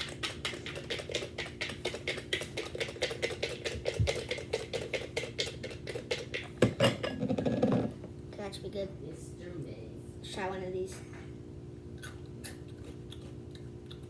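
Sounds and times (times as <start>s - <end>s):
snack crunching while chewed: 0.0s - 6.6s, 11.9s - 14.0s.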